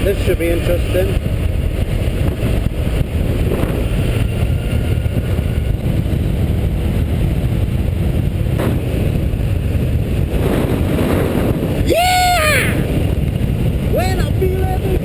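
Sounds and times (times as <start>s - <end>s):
motorcycle engine running: 0.0s - 11.8s
wind rushing on microphone: 0.0s - 15.0s.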